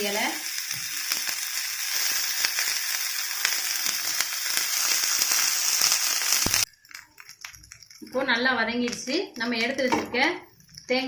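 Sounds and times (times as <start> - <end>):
leaves sizzling in hot oil: 0.0 - 10.0.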